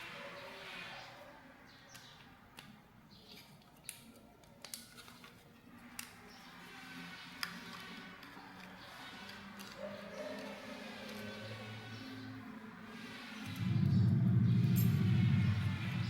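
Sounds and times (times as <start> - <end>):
laptop parts clicking and tapping: 1.9 - 6.4, 7.4 - 11.4.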